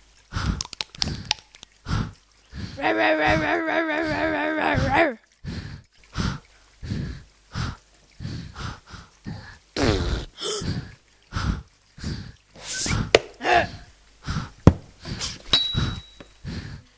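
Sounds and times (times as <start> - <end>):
children making mouth noises: 2.8 - 5.2, 9.8 - 10.8, 12.6 - 13.9, 15.1 - 15.5
sliding vocal whoop: 2.8 - 5.2, 12.6 - 13.8.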